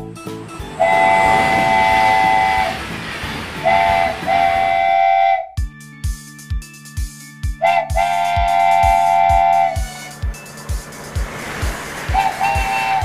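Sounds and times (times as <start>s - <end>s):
music with steady beat: 0.0s - 13.0s
steam train whistle: 0.8s - 2.8s, 3.6s - 5.6s, 7.6s - 10.3s, 12.1s - 13.0s.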